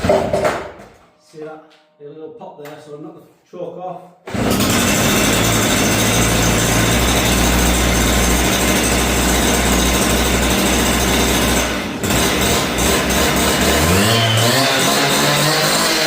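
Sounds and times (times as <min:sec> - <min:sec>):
cut-off saw engine running: 0:04.3 - 0:16.0.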